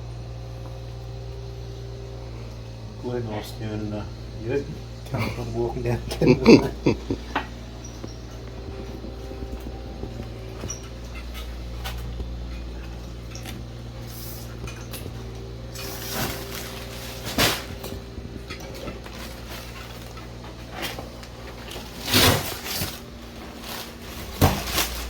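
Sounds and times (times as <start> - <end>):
steady low hum: 0.0 - 25.0
knocks and clatter of handling: 7.1 - 25.0.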